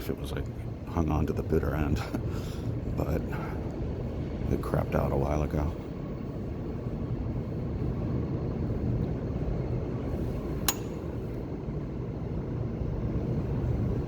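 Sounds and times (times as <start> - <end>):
subway station rumble: 0.0 - 14.0
sharp click: 10.6 - 11.0.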